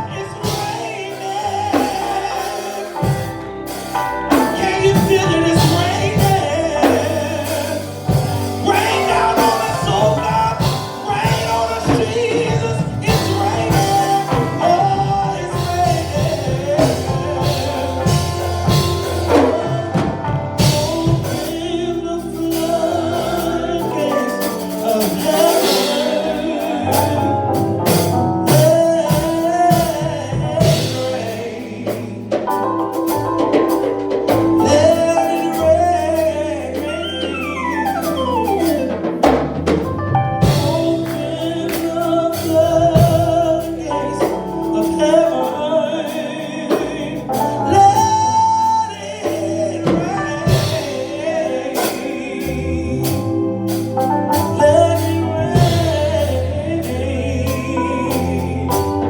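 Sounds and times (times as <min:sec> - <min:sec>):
bass: 0:00.0 - 0:59.0
drums: 0:00.0 - 0:59.0
gospel singing: 0:00.0 - 0:59.0
keyboard: 0:00.0 - 0:59.0.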